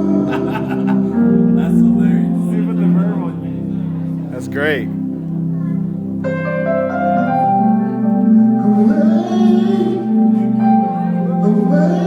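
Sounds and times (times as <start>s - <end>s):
person singing with reverb: 0.0s - 3.1s, 7.3s - 12.0s
bell-like chord ringing: 0.0s - 12.0s.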